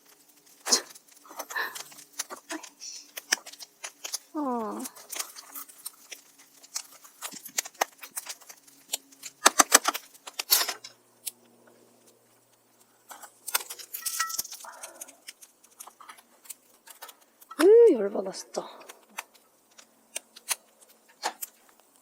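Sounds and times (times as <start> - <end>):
small objects clattering: 0.0 - 11.0, 12.0 - 17.7.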